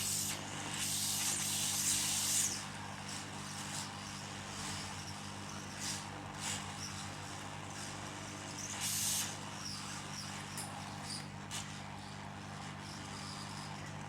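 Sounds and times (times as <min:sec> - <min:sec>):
hot air hissing: 0:00.0 - 0:02.6, 0:08.6 - 0:10.0.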